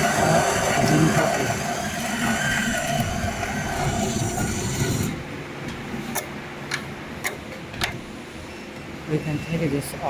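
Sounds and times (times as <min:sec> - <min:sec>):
coffee grinder whining: 0:00.0 - 0:05.2.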